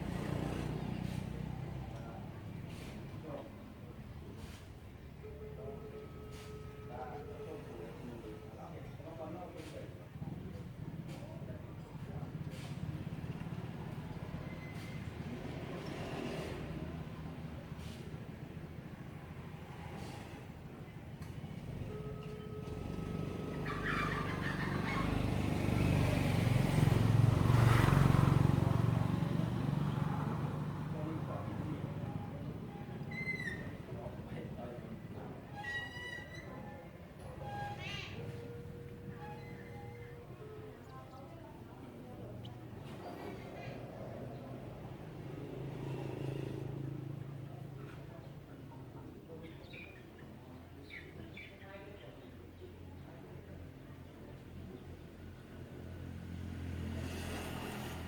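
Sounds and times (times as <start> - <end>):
vehicle engine passing by: 0.0 - 4.9, 10.3 - 20.8, 22.6 - 36.0, 37.2 - 49.1, 54.6 - 58.0.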